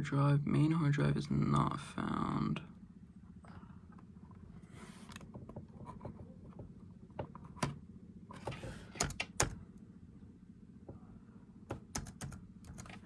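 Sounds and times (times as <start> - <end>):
low steady hum: 0.0 - 13.0
laptop hardware clicks and knocks: 8.4 - 9.6, 11.7 - 13.0.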